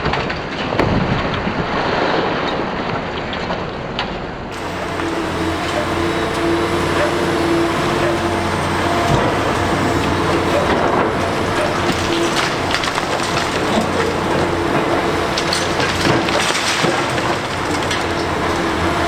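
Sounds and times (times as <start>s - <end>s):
excavator diesel engine running: 4.5s - 19.0s
hydraulic whine: 4.5s - 19.0s
rough demolition noise: 4.5s - 19.0s.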